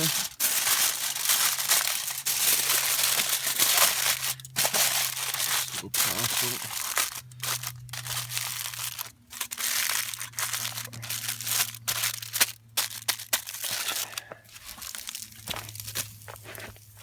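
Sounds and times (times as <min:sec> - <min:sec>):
tin foil crinkling: 0:00.0 - 0:17.0.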